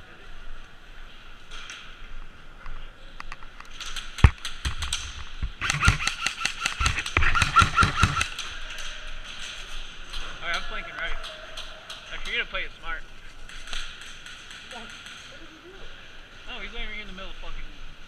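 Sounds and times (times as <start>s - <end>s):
airsoft gun shots: 4.2s - 8.4s.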